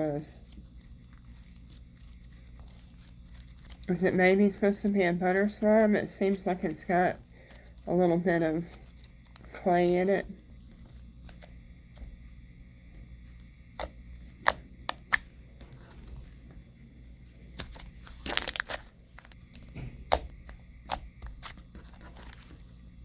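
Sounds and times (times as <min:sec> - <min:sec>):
slime crackling: 0:00.0 - 0:11.5, 0:17.5 - 0:22.8
slime clicking and popping: 0:19.5 - 0:21.5.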